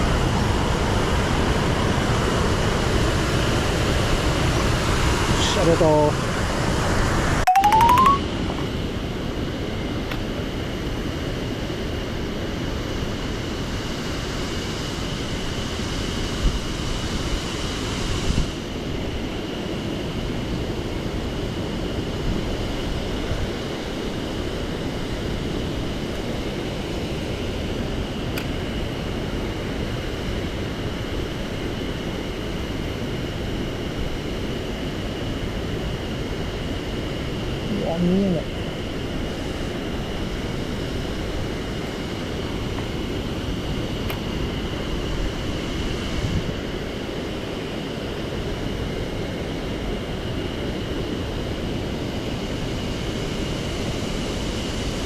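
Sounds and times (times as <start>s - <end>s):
thin high tone: 7.4s - 8.3s.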